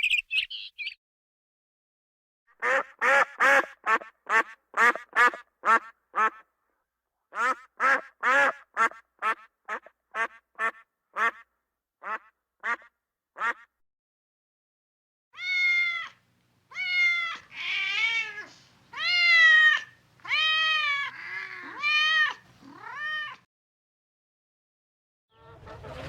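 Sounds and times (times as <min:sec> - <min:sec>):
duck quacking: 0:02.6 - 0:06.4, 0:07.4 - 0:11.4, 0:12.0 - 0:13.7, 0:25.4 - 0:26.0.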